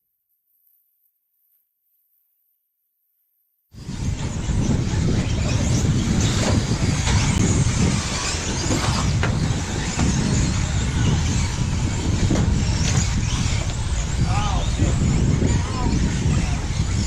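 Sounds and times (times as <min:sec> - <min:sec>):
steady low rumble: 0:03.8 - 0:17.0
toy car motors whining: 0:03.8 - 0:17.0.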